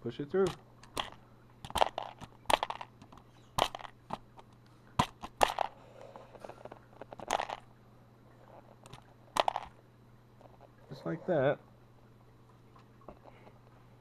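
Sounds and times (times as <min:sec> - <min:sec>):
plastic keyboard parts clicking: 0:00.4 - 0:03.9.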